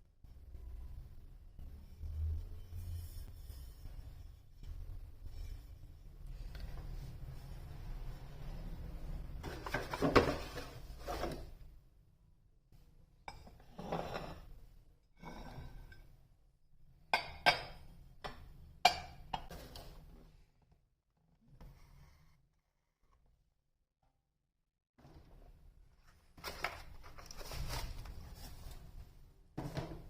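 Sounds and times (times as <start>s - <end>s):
kitchenware clattering: 17.2s - 19.7s.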